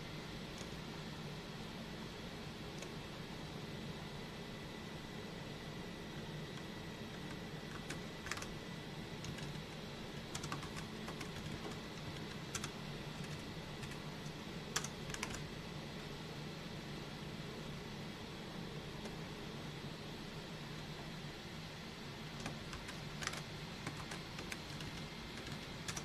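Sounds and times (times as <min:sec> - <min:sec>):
typing on computer keyboard: 0:07.2 - 0:08.6, 0:09.2 - 0:15.5, 0:22.3 - 0:26.0.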